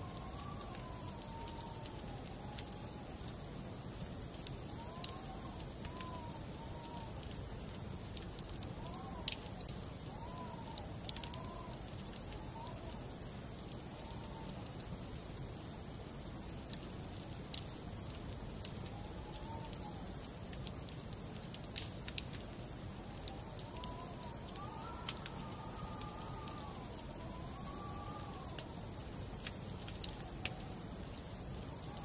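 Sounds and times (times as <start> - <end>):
low rumble of flames: 0.0 - 32.0
wood fire crackling and popping: 0.0 - 32.0
faint wavering whistles: 23.0 - 29.1.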